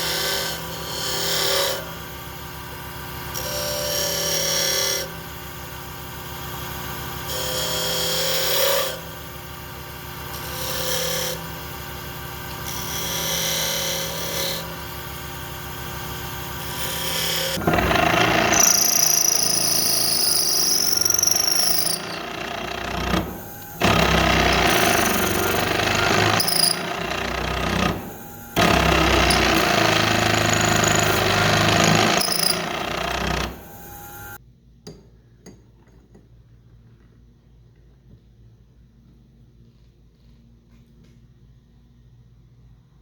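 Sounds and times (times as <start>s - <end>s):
power tool running loudly: 0.0s - 34.4s.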